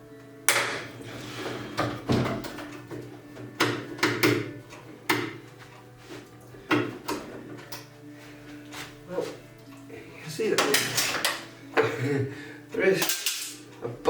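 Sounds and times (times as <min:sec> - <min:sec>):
metal knocks and clanks: 0:00.5 - 0:05.9, 0:06.6 - 0:07.9.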